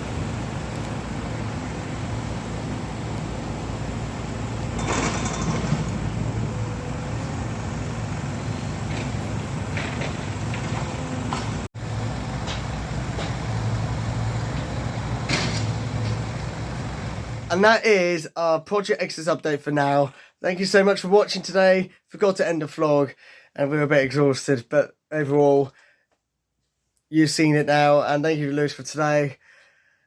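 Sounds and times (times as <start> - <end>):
diesel engine rumbling: 0.0 - 17.7.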